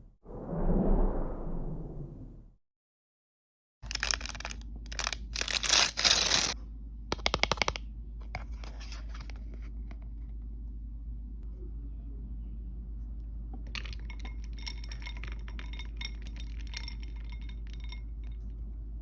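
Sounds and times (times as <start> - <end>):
plastic packaging tearing and crinkling: 3.8 - 6.6.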